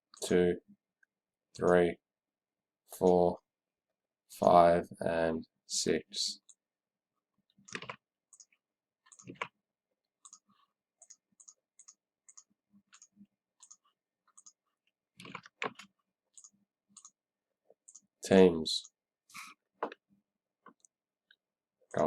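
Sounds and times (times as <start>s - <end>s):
computer mouse clicking: 7.5s - 9.6s, 10.2s - 14.6s, 15.2s - 17.2s, 17.8s - 18.1s.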